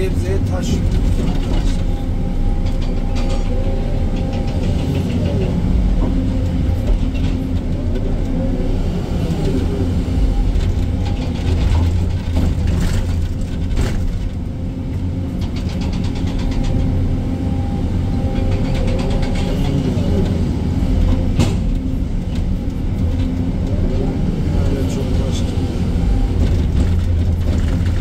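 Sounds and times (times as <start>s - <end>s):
excavator diesel engine under load: 0.0s - 28.0s
sharp knocks and clanks: 21.0s - 22.5s.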